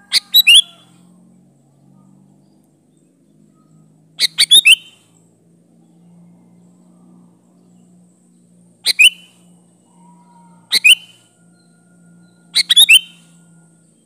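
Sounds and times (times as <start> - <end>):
bulbul calling: 0.0 - 0.8, 4.2 - 5.0, 8.8 - 9.4, 10.6 - 11.2, 12.5 - 13.3.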